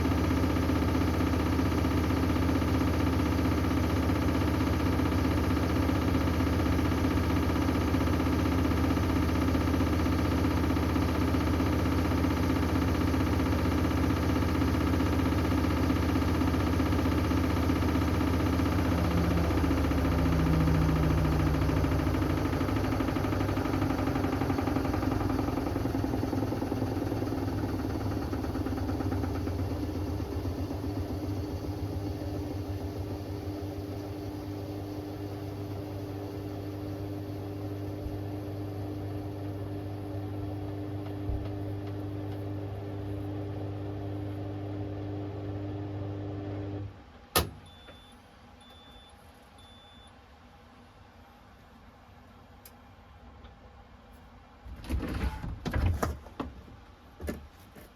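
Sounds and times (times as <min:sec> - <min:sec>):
washing machine drum slowing: 0:09.0 - 0:36.4
beep: 0:47.7 - 0:50.1.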